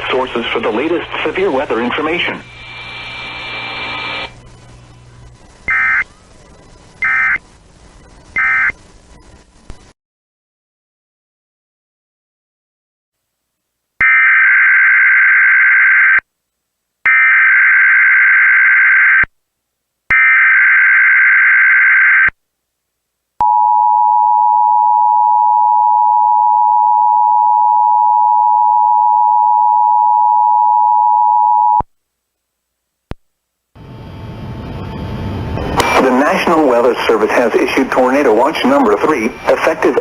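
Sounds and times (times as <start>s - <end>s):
steady attention tone: 33.8s - 40.0s.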